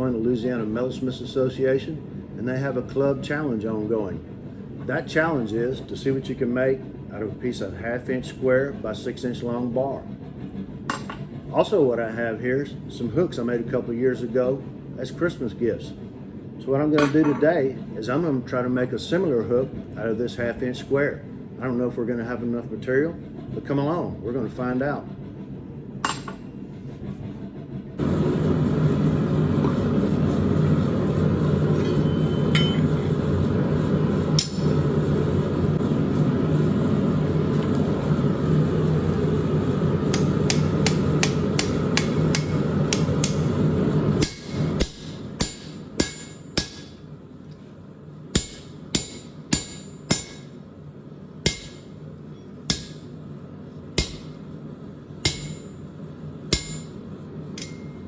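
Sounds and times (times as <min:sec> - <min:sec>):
forge running noise: 0:00.0 - 0:58.0
hammer striking steel on anvil: 0:10.9 - 0:11.3, 0:26.0 - 0:26.5, 0:31.8 - 0:32.9, 0:34.4 - 0:34.9, 0:40.1 - 0:43.6, 0:44.2 - 0:47.1, 0:48.3 - 0:50.6, 0:51.4 - 0:52.0, 0:52.7 - 0:53.1, 0:54.0 - 0:54.4, 0:55.2 - 0:55.9, 0:56.5 - 0:57.0, 0:57.6 - 0:58.0.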